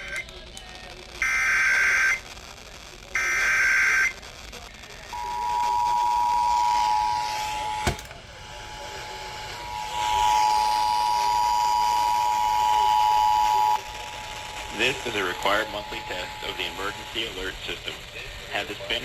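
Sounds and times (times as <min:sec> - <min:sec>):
digital data tones: 0:05.1 - 0:07.9, 0:08.9 - 0:19.0
two-tone attention signal: 0:05.2 - 0:08.0, 0:08.9 - 0:13.9.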